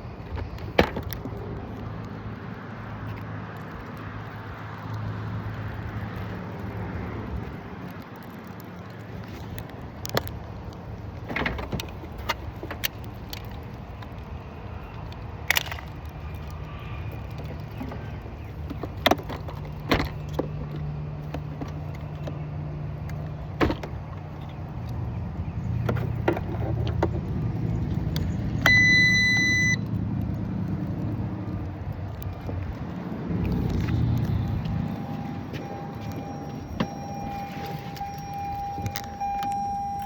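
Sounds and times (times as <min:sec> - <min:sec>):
electronic beep: 0:28.6 - 0:29.8, 0:35.0 - 0:40.0
car engine idling: 0:33.6 - 0:40.0.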